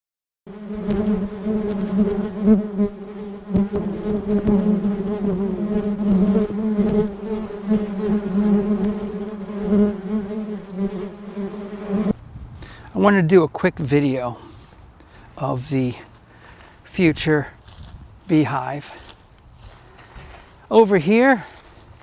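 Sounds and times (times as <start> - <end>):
honeybees buzzing: 0.5 - 13.2.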